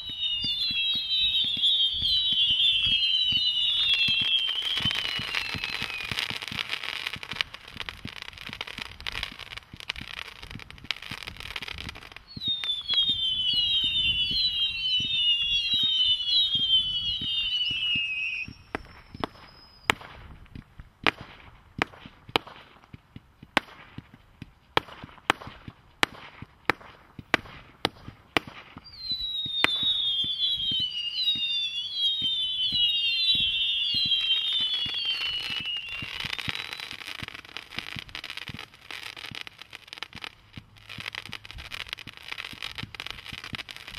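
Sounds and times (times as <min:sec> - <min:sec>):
firework whistles falling in pitch: 0:00.0 - 0:09.5, 0:10.6 - 0:20.2, 0:28.4 - 0:43.9
firework bangs: 0:00.0 - 0:43.9
firework crackling: 0:00.0 - 0:43.9.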